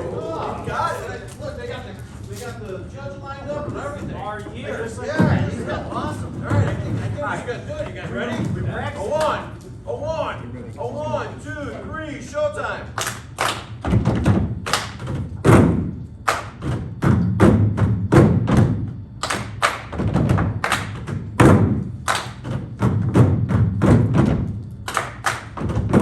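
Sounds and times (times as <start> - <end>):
rhythmic percussion thumps: 13.0 - 26.0.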